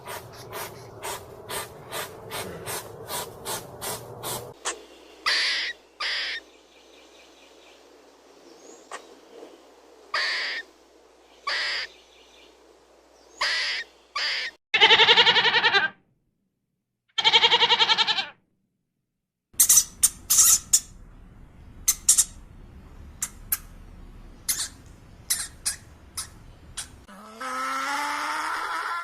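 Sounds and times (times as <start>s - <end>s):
bird calls: 0.6s - 7.8s, 11.4s - 12.6s, 23.1s - 27.1s
sharp high bird chirps: 19.6s - 21.0s, 21.8s - 22.4s, 24.4s - 27.1s.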